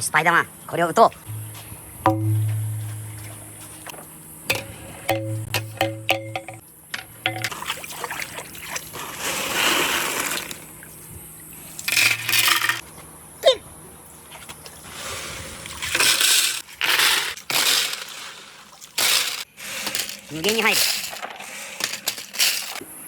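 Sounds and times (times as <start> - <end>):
glass marbles rolling and clinking: 4.5 - 7.6, 11.9 - 12.8, 19.9 - 22.8.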